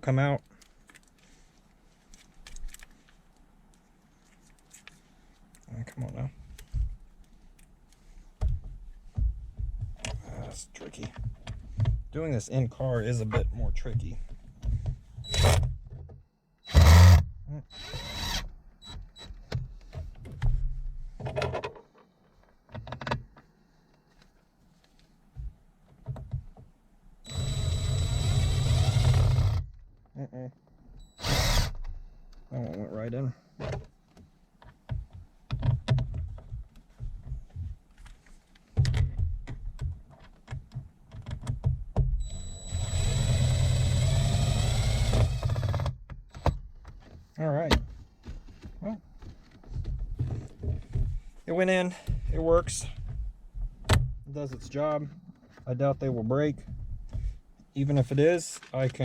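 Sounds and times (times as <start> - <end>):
screws being driven: 15.2 - 15.6, 16.7 - 19.3, 27.3 - 29.6, 31.1 - 31.8, 42.2 - 46.6
power drill whine: 15.3 - 15.6, 16.7 - 19.3, 27.3 - 29.6, 31.1 - 31.8, 42.2 - 46.6.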